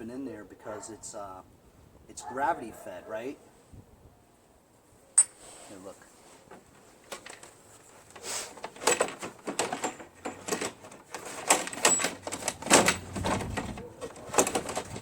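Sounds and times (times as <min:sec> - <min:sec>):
hands handling fuel tank parts: 0:06.4 - 0:15.0.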